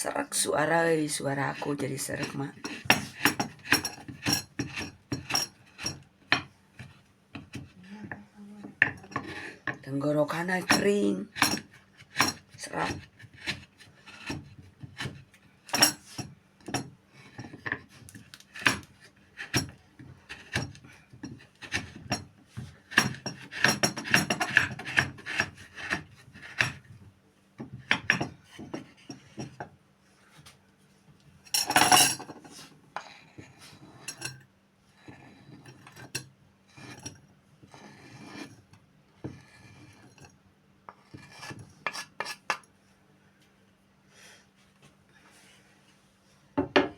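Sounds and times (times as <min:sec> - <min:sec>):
kitchen utensils scraping: 0:01.1 - 0:06.0, 0:07.5 - 0:15.1.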